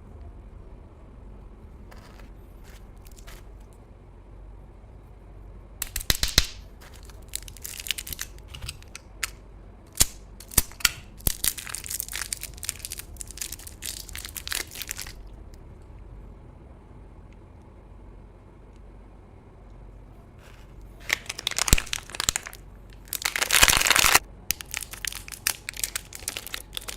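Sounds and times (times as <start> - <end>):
crunchy food being chewed: 1.9 - 3.8, 6.8 - 8.9, 11.2 - 15.4, 20.4 - 26.9.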